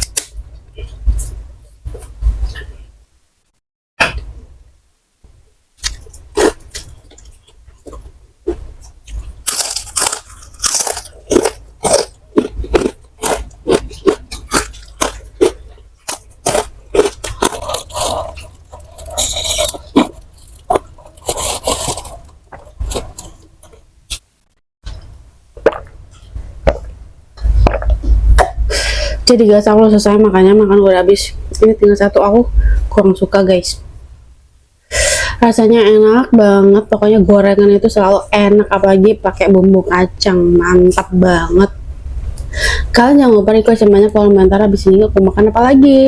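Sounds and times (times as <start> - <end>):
crunching and chewing snacks: 5.8 - 24.2.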